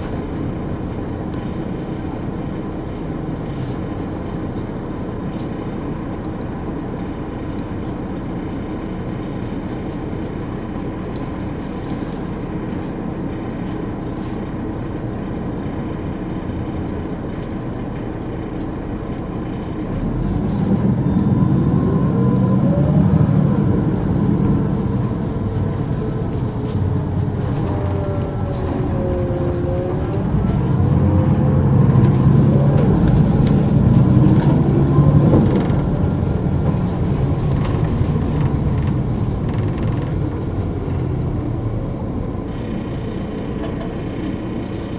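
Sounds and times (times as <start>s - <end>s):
bus diesel engine running: 0.0s - 44.9s.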